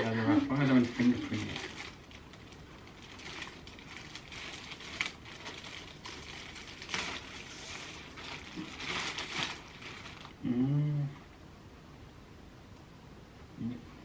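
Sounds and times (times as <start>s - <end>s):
packaging crinkling and rustling: 0.0s - 10.4s.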